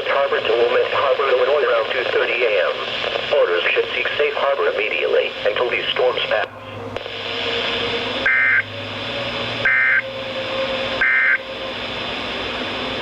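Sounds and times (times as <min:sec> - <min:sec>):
radio hiss: 0:00.0 - 0:13.0
two-tone digital data squawk: 0:08.3 - 0:08.6, 0:11.0 - 0:11.4.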